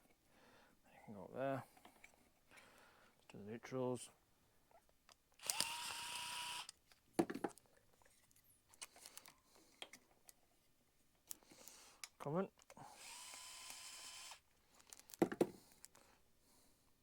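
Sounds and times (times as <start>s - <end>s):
power tool motor whirring: 5.4s - 6.7s, 12.9s - 14.4s.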